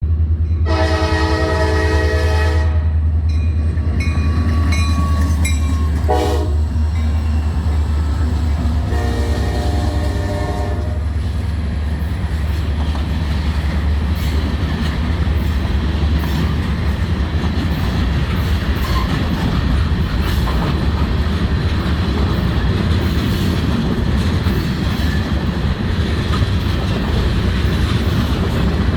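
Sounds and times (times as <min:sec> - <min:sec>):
low rumble of moving train: 0:00.0 - 0:28.9
train whistle blowing: 0:00.6 - 0:03.0, 0:04.3 - 0:06.7, 0:08.8 - 0:11.1.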